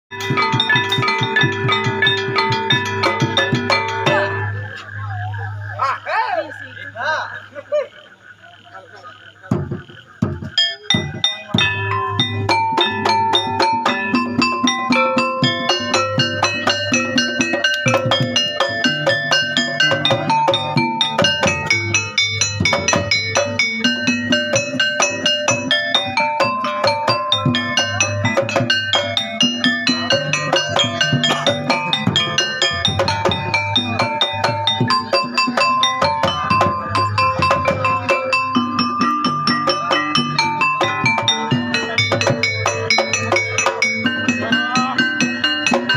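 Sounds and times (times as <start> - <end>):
drum beat: 0.1 - 4.7, 9.4 - 45.9
short struck melodic notes: 10.6 - 45.9.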